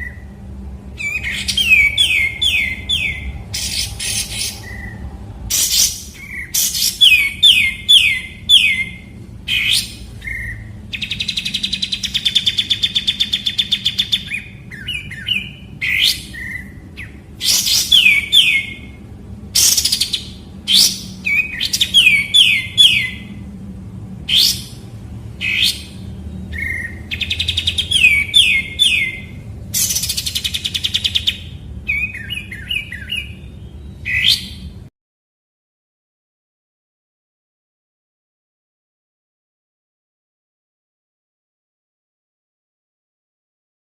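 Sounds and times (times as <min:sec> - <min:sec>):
bulbul singing: 0:00.0 - 0:34.9.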